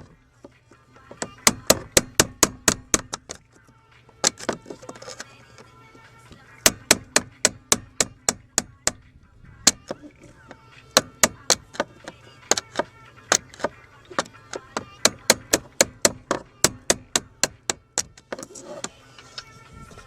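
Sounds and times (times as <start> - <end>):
hammer striking metal chisel: 1.1 - 3.4, 6.7 - 9.1, 10.9 - 19.0.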